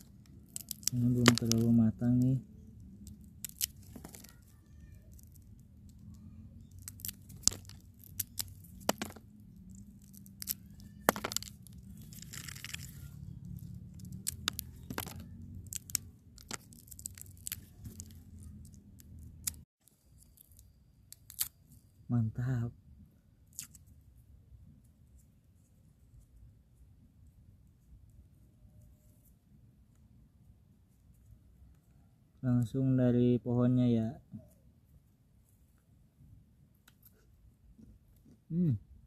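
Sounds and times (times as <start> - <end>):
fruit skin cracking and tearing: 0.0 - 2.3, 2.9 - 19.6, 20.2 - 21.6, 23.5 - 23.9.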